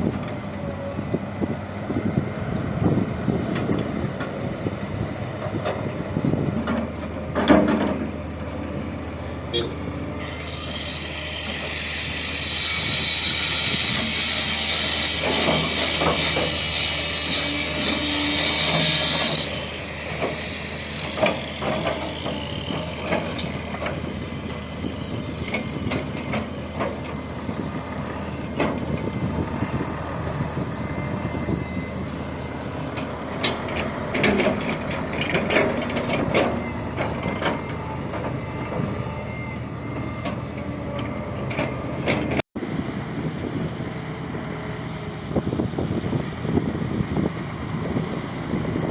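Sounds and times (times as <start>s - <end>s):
heavy vehicle engine running: 0.0s - 10.8s, 19.8s - 48.9s
metallic clanks and knocks: 6.6s - 8.1s.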